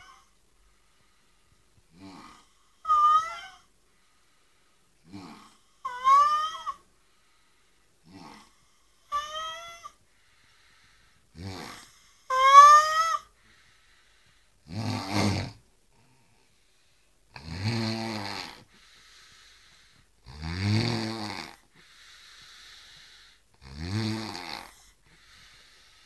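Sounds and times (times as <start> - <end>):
snoring: 1.9 - 3.5, 5.0 - 6.7, 8.0 - 9.6, 11.3 - 12.5, 14.6 - 15.6, 17.3 - 18.7, 20.2 - 21.7, 22.4 - 26.0
high rising animal cry: 2.0 - 3.7, 5.3 - 6.8, 9.1 - 10.0, 12.3 - 13.3.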